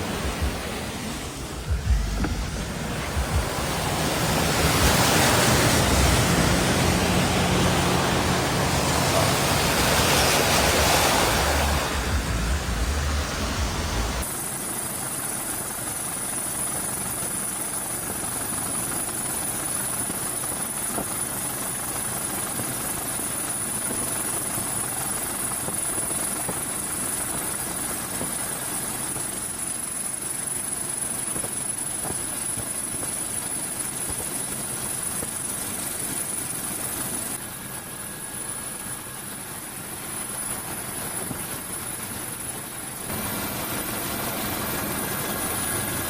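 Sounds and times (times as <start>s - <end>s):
helicopter rotor and engine: 0.0s - 13.6s, 14.2s - 46.0s
high whine: 0.0s - 14.6s.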